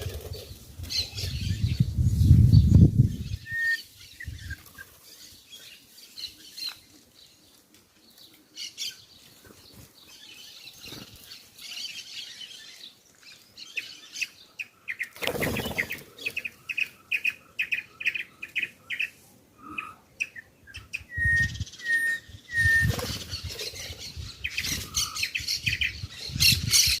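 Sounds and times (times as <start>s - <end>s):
bird wing flaps: 15.2s - 16.1s, 22.8s - 23.6s.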